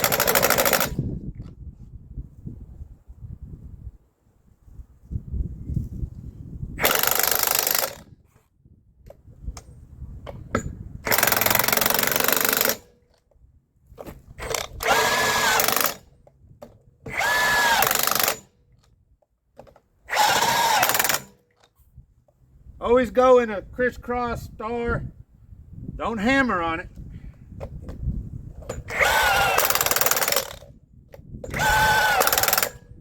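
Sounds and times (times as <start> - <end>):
impact wrench bursts: 0.0 - 1.0, 6.8 - 8.1, 11.1 - 12.9, 14.4 - 16.2, 17.0 - 18.5, 20.1 - 21.4, 28.7 - 30.7, 31.4 - 32.9.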